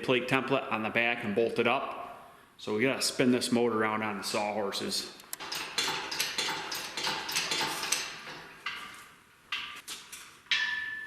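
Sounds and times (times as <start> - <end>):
engine clanking as turned by hand: 5.4 - 9.0.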